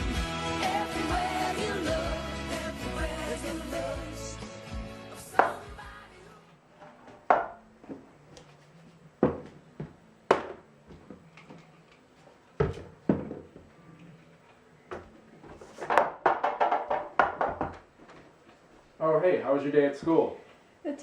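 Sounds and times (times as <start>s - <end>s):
household knocks and thumps: 9.2s - 11.2s, 12.6s - 13.7s, 14.9s - 18.2s.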